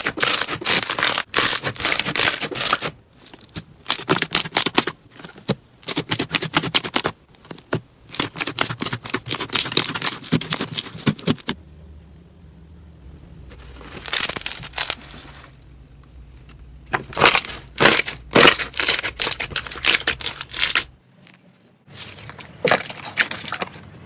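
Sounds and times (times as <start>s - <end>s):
low hum: 11.6s - 17.8s.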